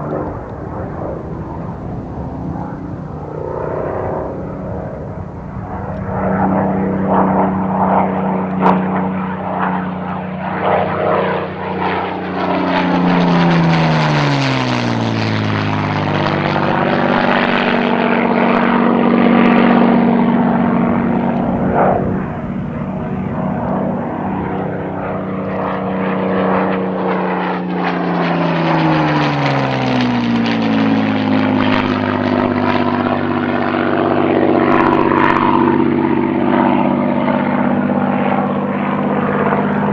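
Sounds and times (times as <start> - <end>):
propeller plane flying past: 0.0 - 39.9.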